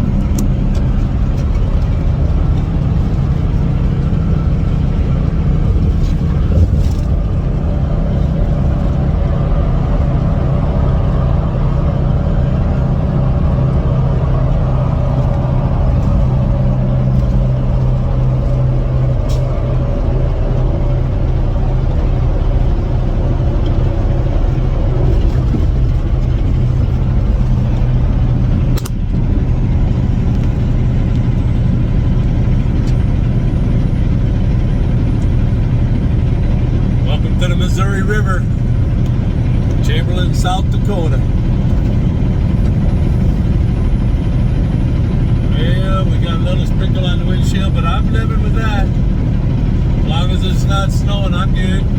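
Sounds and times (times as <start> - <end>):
vehicle engine and road drone: 0.0 - 51.9
sharp click: 28.8 - 29.0.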